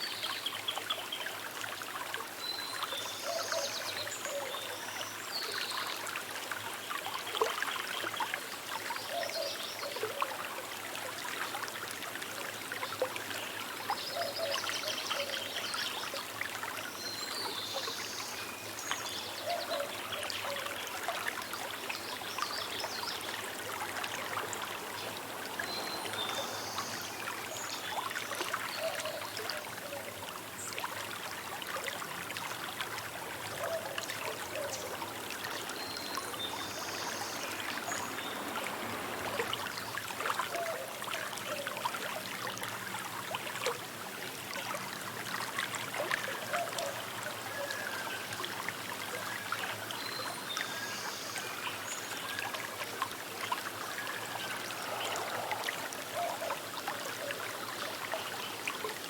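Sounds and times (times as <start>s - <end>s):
river babbling over stones: 15.9s - 59.0s
faint bird calls: 53.9s - 57.4s.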